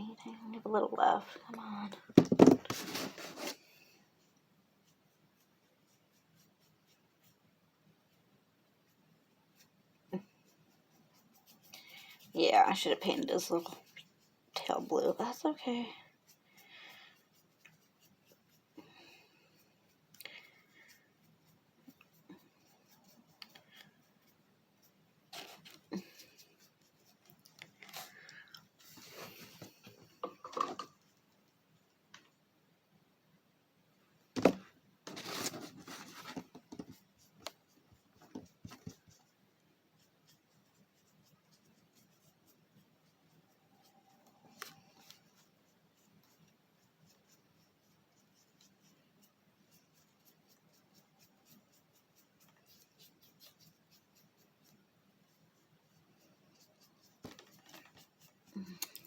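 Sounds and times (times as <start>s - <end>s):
rustling: 2.4s - 7.4s, 9.5s - 32.3s, 34.4s - 39.4s
brush scratches: 2.7s - 7.5s, 8.8s - 29.9s, 35.1s - 58.8s.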